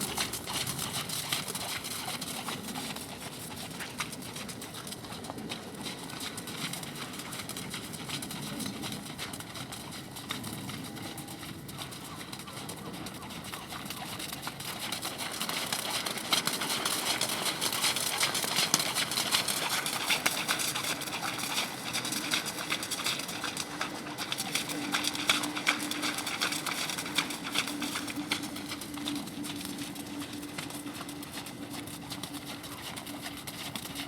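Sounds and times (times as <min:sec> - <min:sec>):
horse hoofbeats: 0:00.0 - 0:34.0
steady hum: 0:15.2 - 0:34.0.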